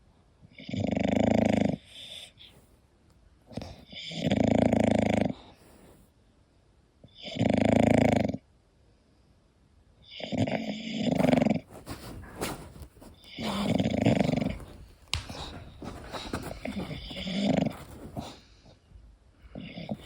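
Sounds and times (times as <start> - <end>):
dog snoring: 0.6 - 2.6, 3.5 - 6.0, 7.2 - 8.4, 10.1 - 18.6, 19.5 - 20.0
rattly breathing: 11.1 - 18.8.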